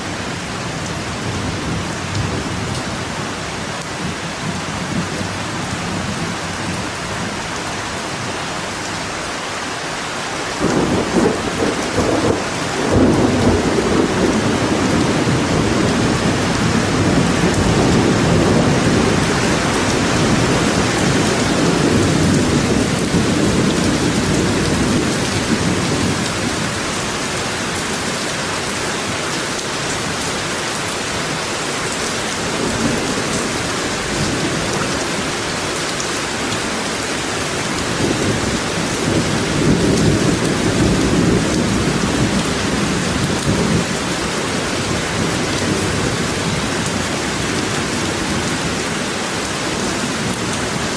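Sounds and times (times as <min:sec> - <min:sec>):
heavy rain: 0:00.0 - 0:50.9
thunder rumbling: 0:10.6 - 0:27.0, 0:37.8 - 0:46.7.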